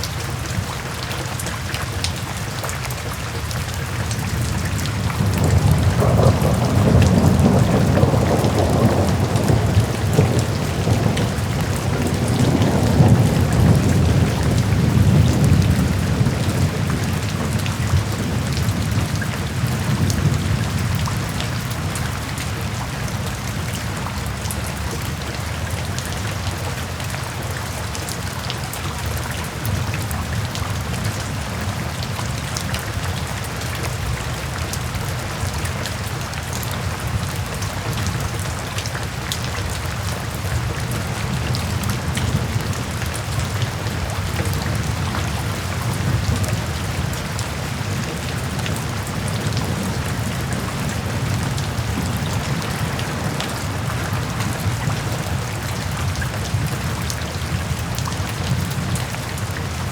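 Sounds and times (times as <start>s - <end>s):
rain falling: 0.0s - 59.9s.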